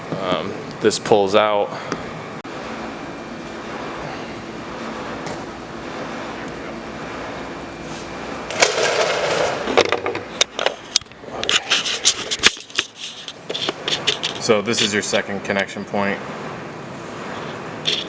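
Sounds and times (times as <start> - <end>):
background hum: 0.0 - 18.0
scraping rub: 5.9 - 9.8, 11.4 - 15.0
sharp clicks and knocks: 8.5 - 15.0.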